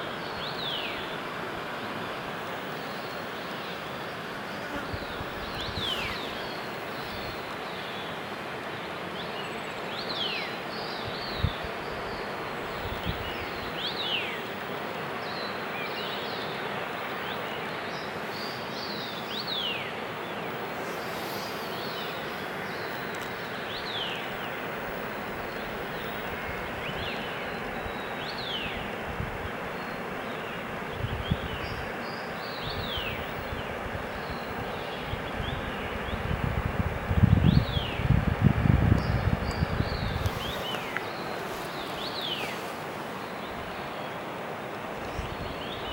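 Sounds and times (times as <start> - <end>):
birds whistling: 39.9 - 43.5
waterfall rushing: 40.1 - 45.1.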